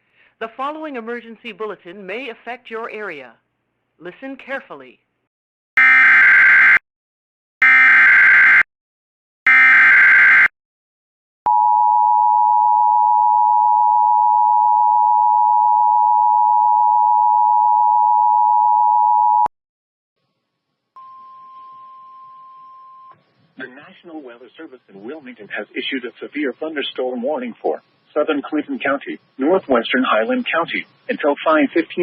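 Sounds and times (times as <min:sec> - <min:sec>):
faint steady single tone: 0:11.5 - 0:19.5, 0:21.0 - 0:23.2.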